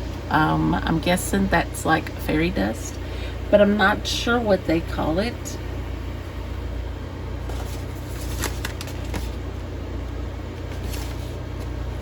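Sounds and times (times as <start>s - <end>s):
steady low hum: 0.0s - 12.0s
plastic bags crinkling: 7.5s - 9.4s.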